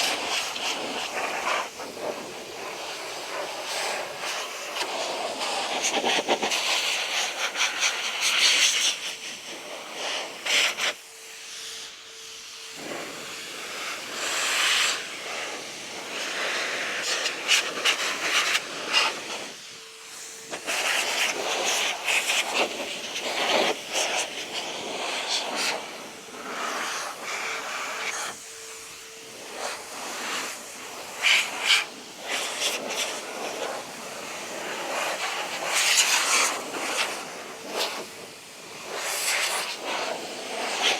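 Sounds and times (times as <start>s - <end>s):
air blower hissing: 0.0s - 40.9s.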